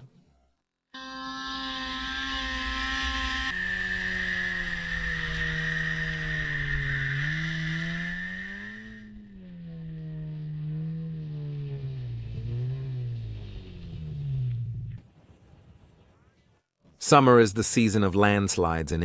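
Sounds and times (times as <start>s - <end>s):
engine running: 1.0s - 15.1s
low rumble: 2.3s - 15.6s.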